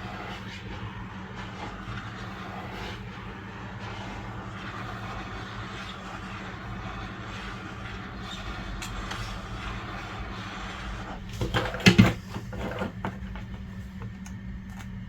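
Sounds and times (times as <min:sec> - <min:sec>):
heat gun blowing: 0:00.0 - 0:11.4
low motor hum: 0:00.0 - 0:15.0.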